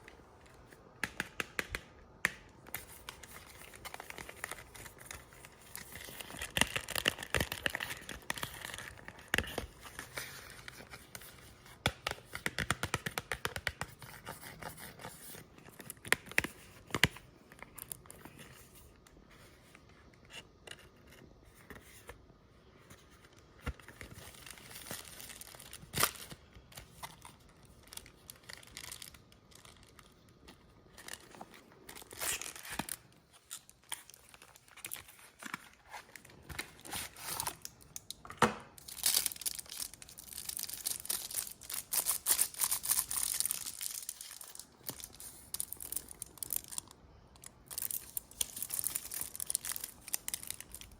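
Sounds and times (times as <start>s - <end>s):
wrapper crinkling and tearing: 2.8s - 10.8s, 23.8s - 38.2s, 38.8s - 50.9s.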